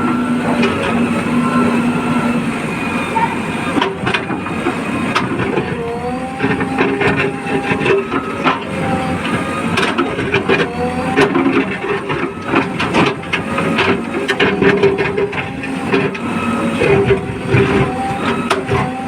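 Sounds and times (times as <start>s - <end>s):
engine and hydraulics whining: 0.0s - 19.0s.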